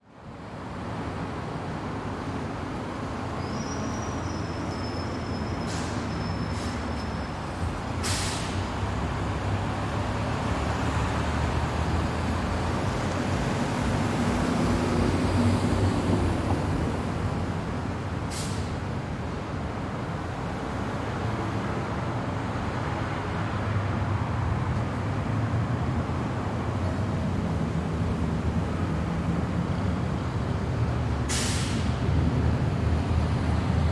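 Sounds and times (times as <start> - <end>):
traffic rumble: 0.2 - 33.9
faint high squeal: 3.4 - 7.4
short hisses: 8.0 - 8.6, 18.3 - 18.7, 31.3 - 32.0.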